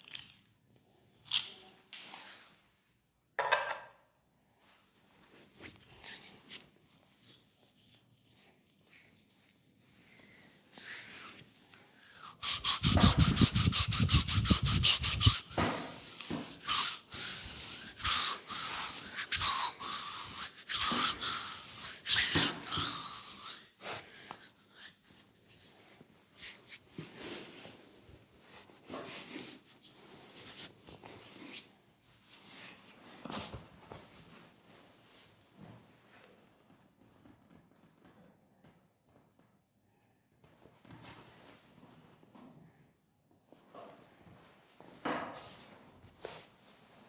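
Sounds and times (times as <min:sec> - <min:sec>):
hands rubbing on skin: 0:05.7 - 0:09.5, 0:10.2 - 0:27.1, 0:29.2 - 0:32.9.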